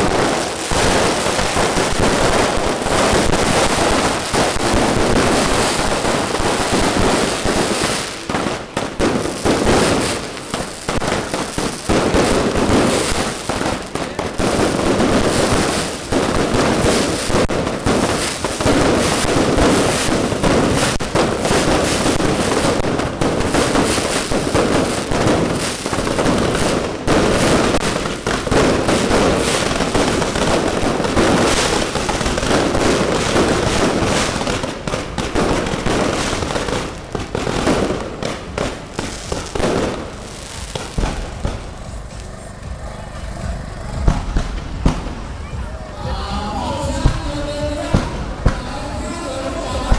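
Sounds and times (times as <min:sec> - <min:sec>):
fireworks bangs and crackling: 0:00.0 - 0:49.9.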